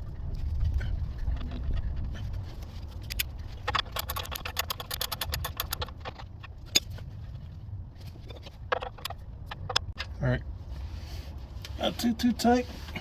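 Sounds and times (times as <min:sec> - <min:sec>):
low steady rumble: 0:00.0 - 0:13.0
ratchet wrench clicking: 0:03.1 - 0:05.9.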